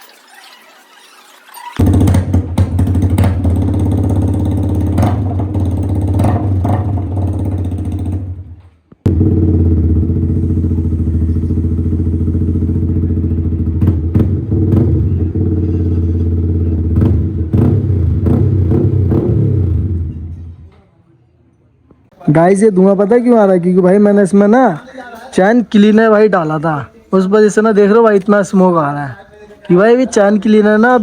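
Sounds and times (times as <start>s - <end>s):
motorcycle engine idling: 1.8s - 18.9s.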